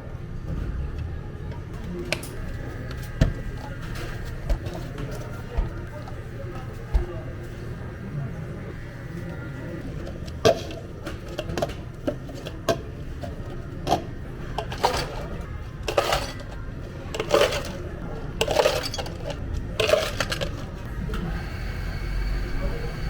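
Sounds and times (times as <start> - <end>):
cups and dishes clattering: 9.8 - 20.9.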